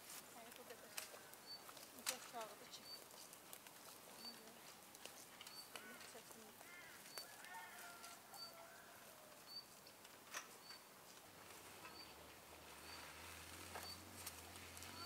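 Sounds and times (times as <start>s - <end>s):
bird chirping faintly: 4.1s - 4.6s, 11.8s - 12.2s.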